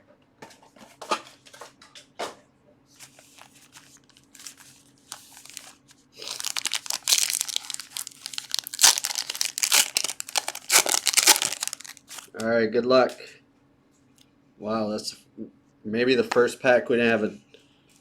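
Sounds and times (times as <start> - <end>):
wrapper tearing and crinkling: 3.1 - 12.4.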